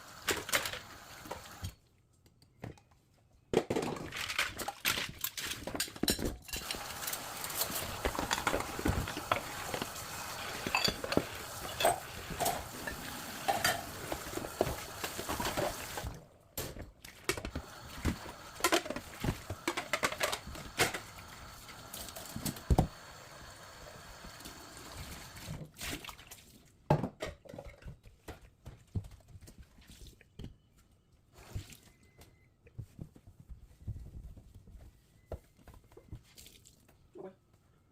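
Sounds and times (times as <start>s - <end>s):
dishes and cutlery clinking: 5.4s - 14.7s
running water: 6.6s - 16.2s.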